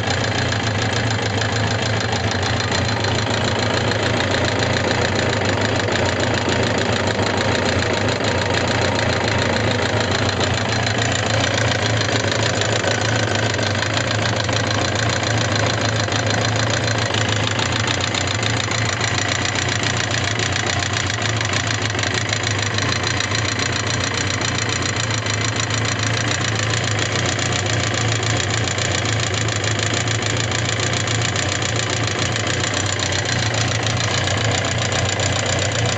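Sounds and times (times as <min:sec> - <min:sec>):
engine ticking rattle: 0:00.0 - 0:35.9
motorcycle engine running: 0:00.0 - 0:35.9.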